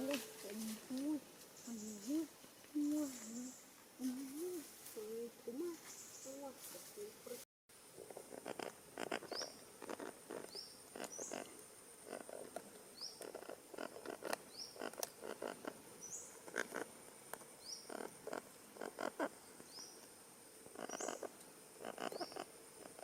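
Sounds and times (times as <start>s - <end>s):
parrot chicks rasping calls: 13.1s - 15.8s, 20.8s - 22.5s.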